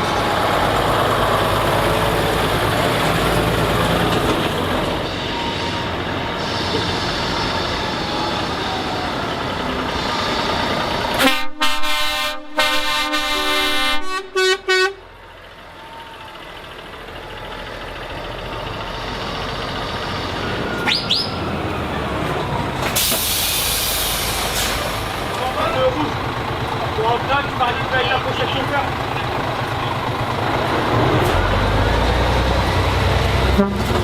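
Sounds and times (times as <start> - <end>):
truck engines running: 0.0 - 34.0
truck air horn blasting: 11.2 - 15.0, 33.5 - 34.0
loud air hiss: 23.0 - 25.1.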